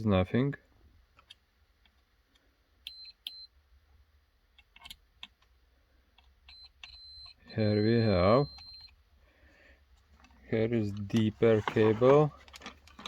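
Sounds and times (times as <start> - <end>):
multimeter beeping: 2.9 - 3.5, 6.4 - 9.0.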